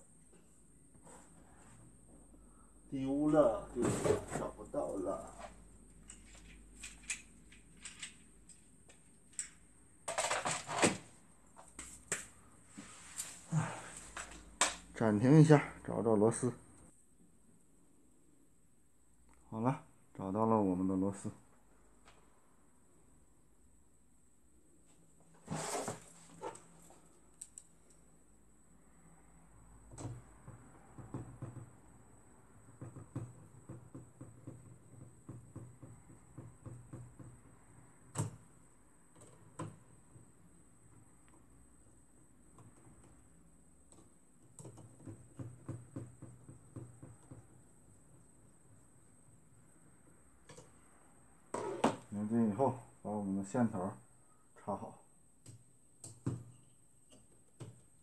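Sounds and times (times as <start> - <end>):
rustling and scraping: 3.8 - 7.1, 10.1 - 14.6, 24.9 - 27.2
rustling scrape: 12.7 - 14.2, 25.4 - 27.0.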